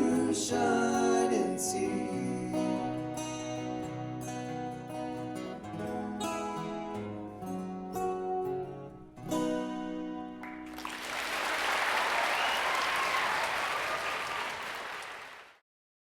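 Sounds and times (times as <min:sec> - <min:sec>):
acoustic guitar chords: 0:00.0 - 0:10.8
audience applauding: 0:10.4 - 0:15.6.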